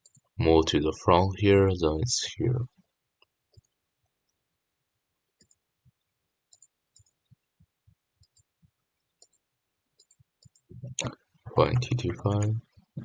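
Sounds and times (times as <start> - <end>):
computer mouse clicks: 5.4 - 5.6, 6.5 - 7.2, 8.2 - 8.5, 9.2 - 9.4, 10.0 - 11.1, 11.8 - 12.6.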